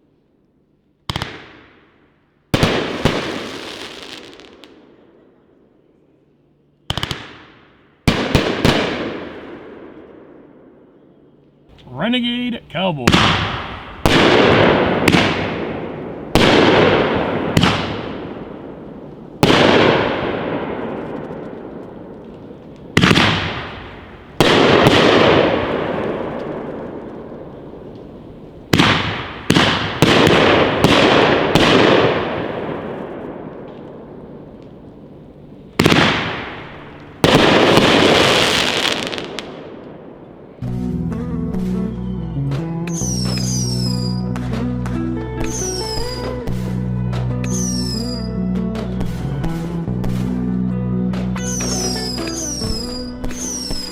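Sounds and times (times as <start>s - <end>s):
fireworks booming: 2.6s - 5.2s, 11.7s - 40.7s, 51.5s - 53.9s
fireworks crackling hiss: 34.6s - 39.4s, 51.5s - 53.9s.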